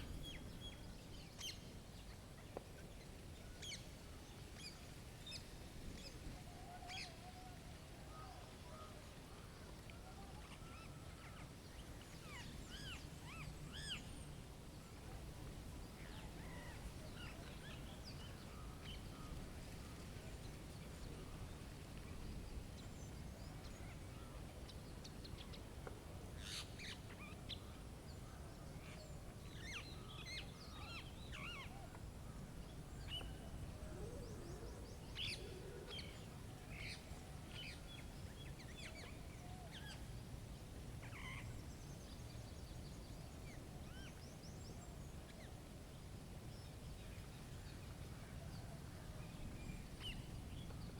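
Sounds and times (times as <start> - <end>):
wild birds chirping: 26.4 - 40.2.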